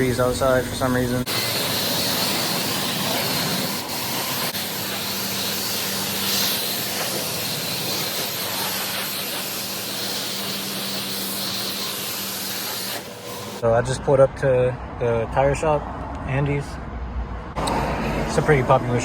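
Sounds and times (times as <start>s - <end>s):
high-pressure water spray hissing: 0.8s - 13.6s.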